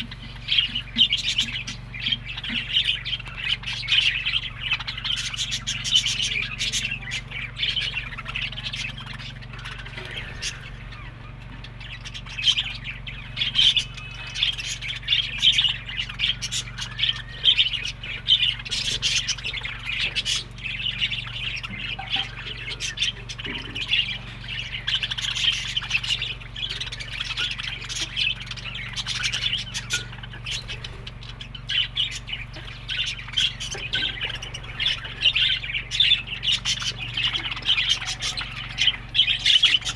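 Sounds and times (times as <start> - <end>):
budgerigars chattering: 0.0 - 39.9
steady low hum: 0.0 - 39.9.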